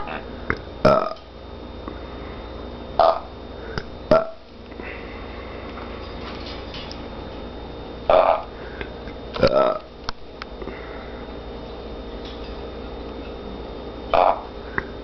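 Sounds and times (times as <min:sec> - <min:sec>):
person burping: 0:00.0 - 0:01.2, 0:03.0 - 0:04.4, 0:08.1 - 0:08.5, 0:09.4 - 0:09.9, 0:14.1 - 0:14.9
parrot mimicking a burp: 0:00.8 - 0:01.2, 0:03.0 - 0:03.3, 0:04.1 - 0:04.4, 0:08.1 - 0:08.5, 0:09.4 - 0:09.9, 0:14.1 - 0:14.5.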